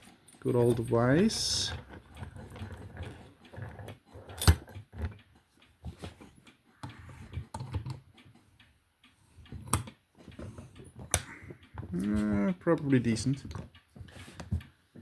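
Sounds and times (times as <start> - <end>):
faint ticking: 6.4 - 15.0
padlock metal clicks and knocks: 6.8 - 8.0, 9.6 - 10.0.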